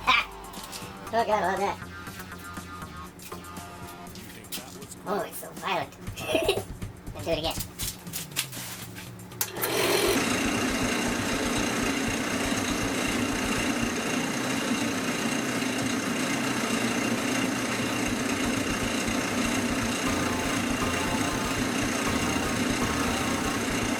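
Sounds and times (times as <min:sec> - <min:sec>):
wood lathe running: 0:09.6 - 0:21.8.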